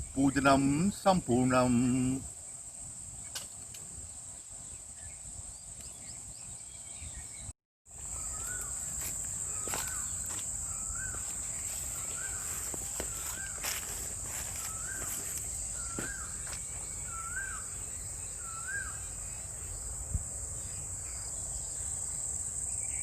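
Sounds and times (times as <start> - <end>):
high-pitched insect drone: 7.9 - 23.0
bird call: 9.4 - 19.1.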